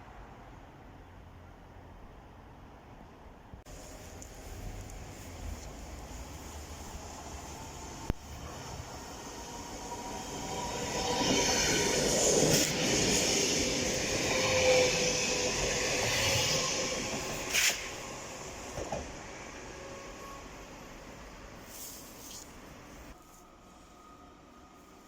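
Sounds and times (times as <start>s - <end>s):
train passing on rails: 0.0s - 25.0s
train wheels squealing: 7.5s - 18.8s, 19.5s - 21.0s.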